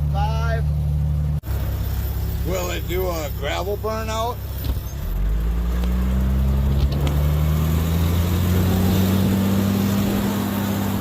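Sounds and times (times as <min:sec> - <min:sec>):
car engine at high revs: 0:00.0 - 0:11.0.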